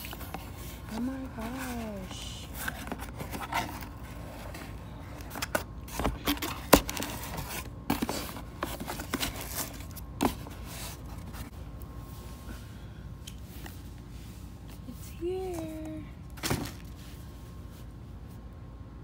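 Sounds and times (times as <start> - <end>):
packaging scraping and tearing: 0.0 - 11.5.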